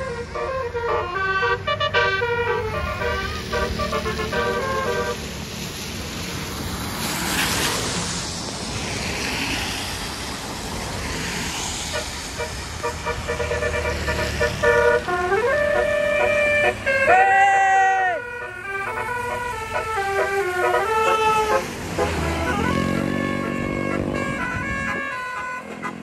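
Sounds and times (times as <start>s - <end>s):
bus horn playing chiming tune: 0.0s - 5.2s, 12.8s - 26.0s
traffic noise: 0.0s - 26.0s.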